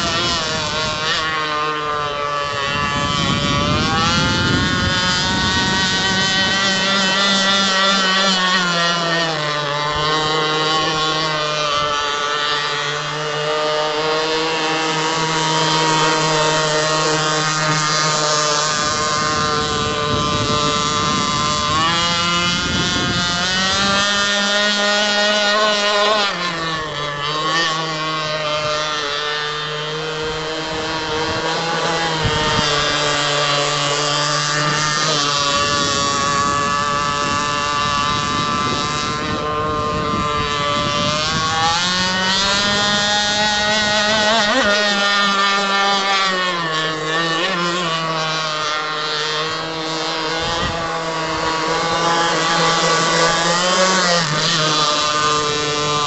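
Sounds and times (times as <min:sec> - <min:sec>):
speedboat engine running hard: 0:00.0 - 0:56.0.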